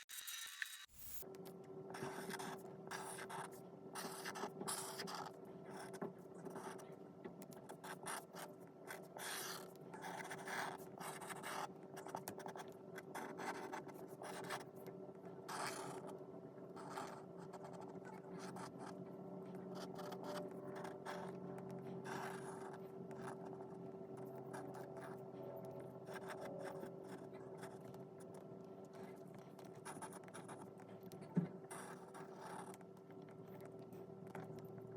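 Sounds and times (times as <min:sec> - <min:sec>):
faint steady hum: 0:00.8 - 0:34.9
pen scratching on paper: 0:01.9 - 0:06.9, 0:07.5 - 0:14.8, 0:15.5 - 0:16.1, 0:16.8 - 0:19.0, 0:19.7 - 0:21.4, 0:22.0 - 0:32.8.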